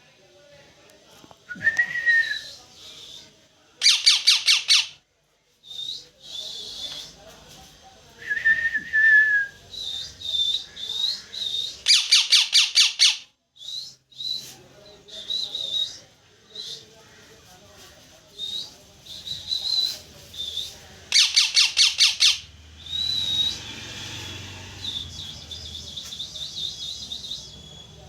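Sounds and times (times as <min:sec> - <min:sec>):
parrot calling loudly: 0:03.8 - 0:05.0, 0:21.1 - 0:22.5.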